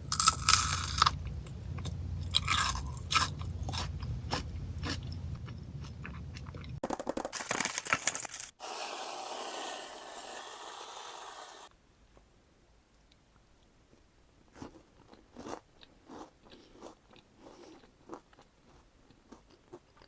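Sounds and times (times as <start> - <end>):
chocolates crunching and chewing: 0.0 - 8.5, 14.5 - 20.0.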